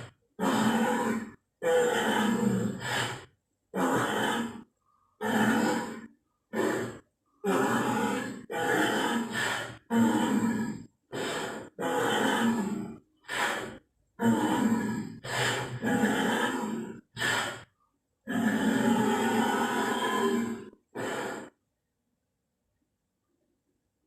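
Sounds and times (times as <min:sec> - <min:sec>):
breathy dinosaur grunts: 0:00.0 - 0:21.6.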